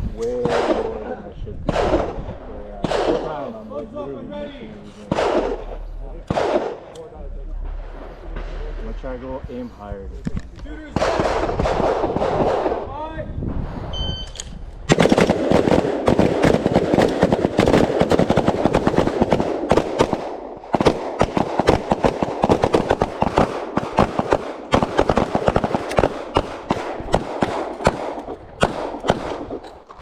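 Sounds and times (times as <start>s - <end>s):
rapid overlapping gunfire: 0.2s - 9.6s, 10.7s - 13.0s, 14.9s - 30.0s.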